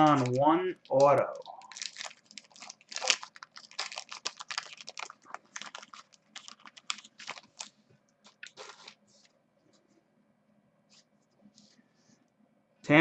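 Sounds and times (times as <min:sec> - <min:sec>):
foil wrapper tearing and crinkling: 0:00.1 - 0:09.0.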